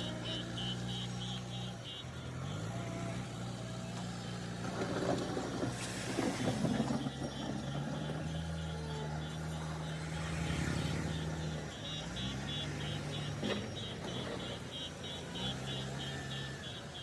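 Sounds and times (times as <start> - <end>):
diesel engine revving: 0.0 - 17.0
rapid high-pitched beeping: 7.0 - 17.0.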